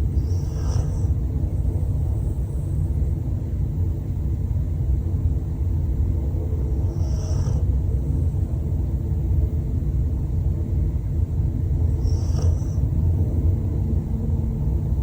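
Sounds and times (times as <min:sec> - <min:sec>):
dog snoring: 0:00.0 - 0:02.2, 0:06.3 - 0:08.5, 0:11.6 - 0:13.4.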